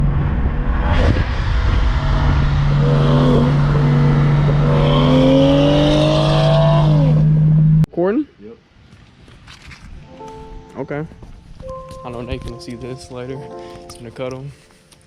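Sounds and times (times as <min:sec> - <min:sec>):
car engine revving: 0:00.0 - 0:07.9.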